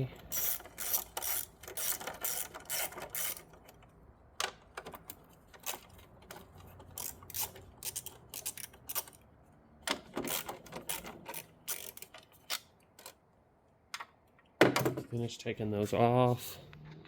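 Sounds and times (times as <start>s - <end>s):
hand tools clicking and clattering: 4.7s - 9.2s.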